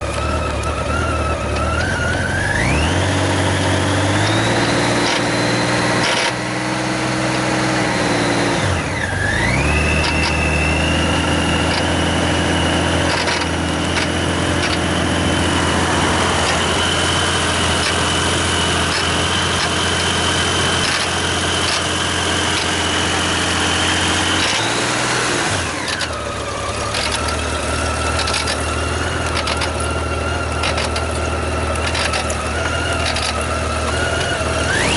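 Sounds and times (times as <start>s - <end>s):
light engine ticks: 0.0s - 2.8s, 9.0s - 10.5s, 13.1s - 14.9s, 18.8s - 22.8s, 25.8s - 34.9s
motorcycle engine revving: 0.0s - 34.9s
whining tone: 0.0s - 34.9s.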